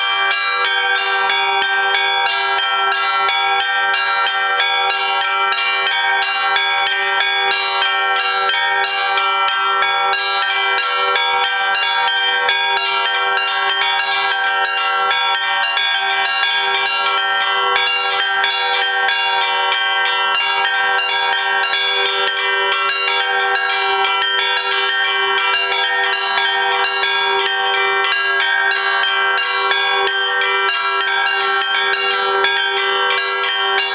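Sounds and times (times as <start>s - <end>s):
low bell ringing: 0.0s - 33.9s
small high church bells: 0.0s - 33.9s.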